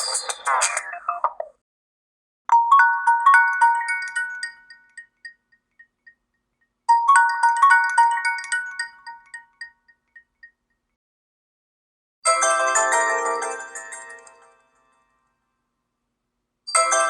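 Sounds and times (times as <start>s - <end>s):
bell-like mallet ringtone: 2.5s - 6.2s, 6.9s - 10.6s.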